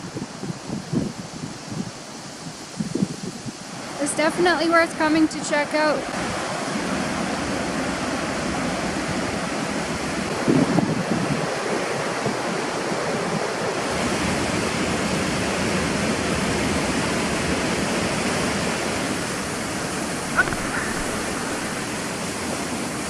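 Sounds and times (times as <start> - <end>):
water rushing: 11.4 - 23.0
low bump: 19.3 - 22.7.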